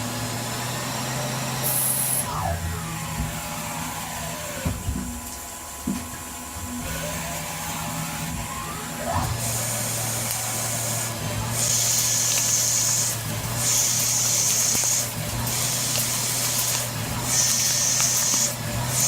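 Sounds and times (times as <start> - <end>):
machine motor hum: 0.0 - 19.0
hissing spray bursts: 9.4 - 19.0.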